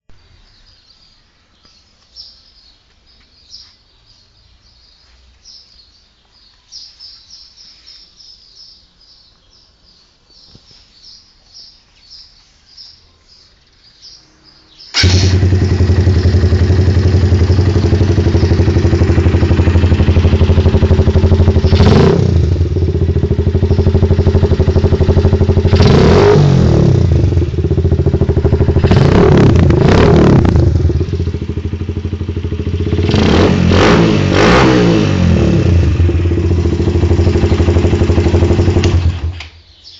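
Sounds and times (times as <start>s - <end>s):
motorcycle engine idling and revving: 14.9s - 39.6s
faint bird chirps: 17.5s - 21.6s.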